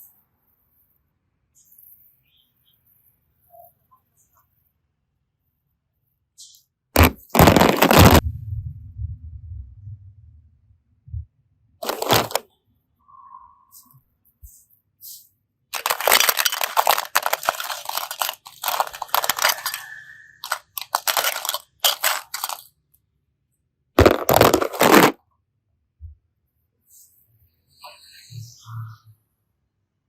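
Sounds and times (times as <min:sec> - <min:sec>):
crunching and crackling: 0:07.0 - 0:08.2, 0:11.8 - 0:12.4, 0:15.8 - 0:22.7, 0:24.0 - 0:25.2.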